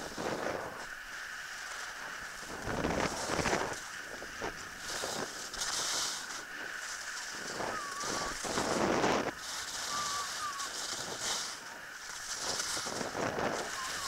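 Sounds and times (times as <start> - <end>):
skis hissing over snow: 0.0 - 14.0
wind buffeting microphone: 0.0 - 14.0
faint short calls: 7.4 - 8.8, 9.6 - 11.7, 13.6 - 14.0.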